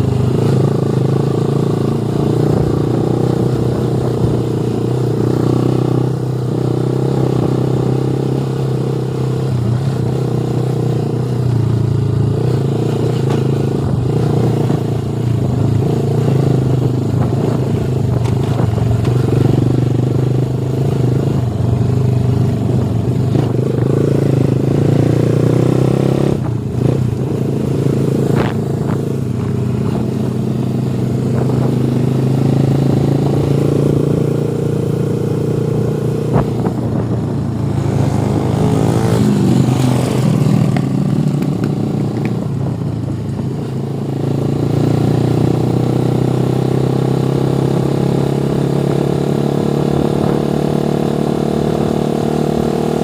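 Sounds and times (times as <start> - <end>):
motorcycle engine running: 0.0 - 53.0.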